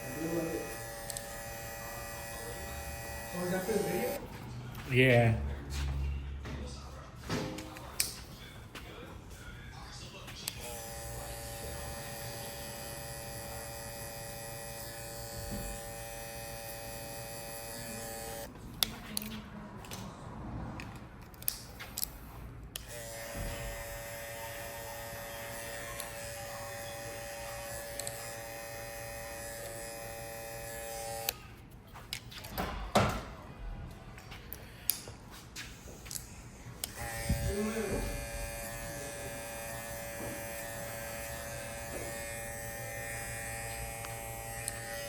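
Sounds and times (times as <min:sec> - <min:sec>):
electric hair clipper buzzing: 0:00.0 - 0:04.2, 0:10.5 - 0:18.5, 0:22.8 - 0:31.4, 0:36.8 - 0:45.0.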